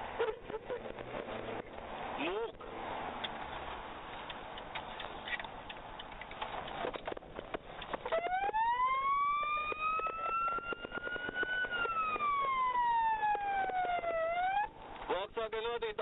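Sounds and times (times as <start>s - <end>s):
scattered clicks: 4.2s - 8.2s, 9.4s - 14.2s
emergency siren wailing: 8.0s - 14.8s.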